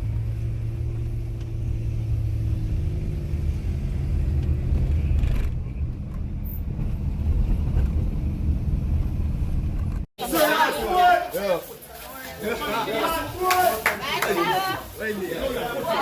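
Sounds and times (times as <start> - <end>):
car road and engine rumble: 0.0 - 10.1.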